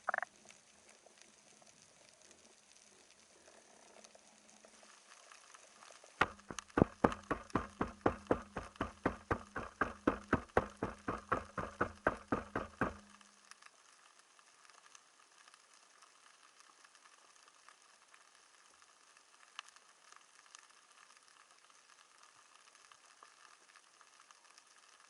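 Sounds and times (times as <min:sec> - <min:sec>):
regular sharp clicks: 0:06.2 - 0:13.2.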